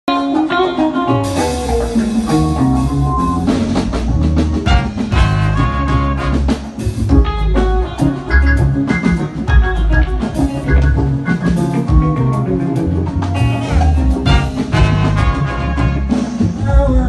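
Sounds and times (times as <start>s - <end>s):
electric piano chords: 0.1s - 16.3s
bass guitar: 0.1s - 17.0s
drum kit: 0.1s - 17.0s.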